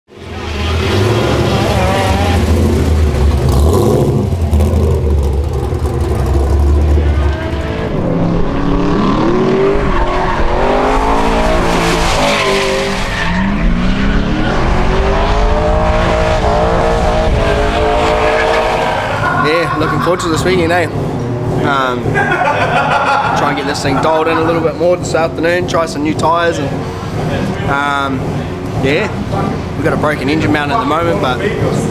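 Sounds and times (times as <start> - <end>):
car engine revving: 0.1 - 31.9
tyre squeal: 17.9 - 20.9.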